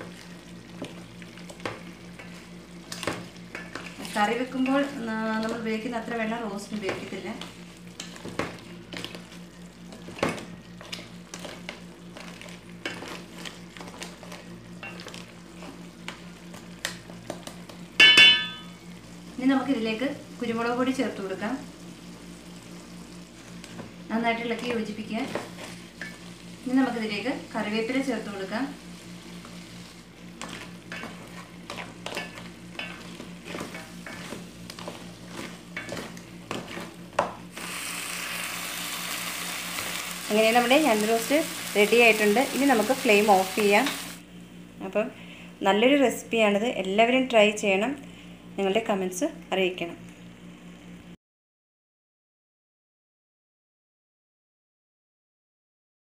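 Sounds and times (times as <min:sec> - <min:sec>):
steady low hum: 0:00.0 - 0:51.2
food sizzling in a pan: 0:18.5 - 0:44.2.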